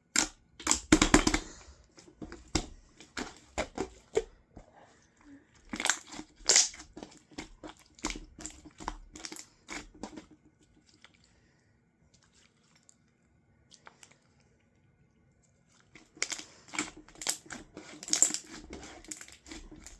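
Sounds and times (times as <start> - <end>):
slime crackling when squeezed: 5.8 - 6.9.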